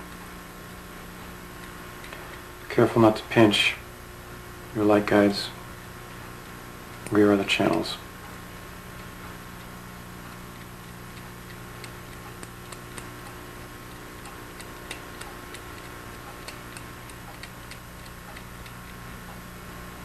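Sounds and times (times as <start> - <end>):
steady electrical hum: 0.0 - 20.0
hand tools clicking on metal parts: 11.1 - 19.0.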